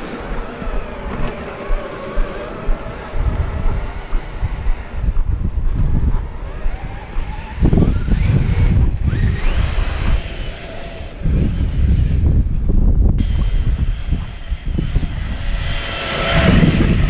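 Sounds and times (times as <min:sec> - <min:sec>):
electric motor whining: 0:00.0 - 0:17.0
wind buffeting microphone: 0:00.0 - 0:17.0.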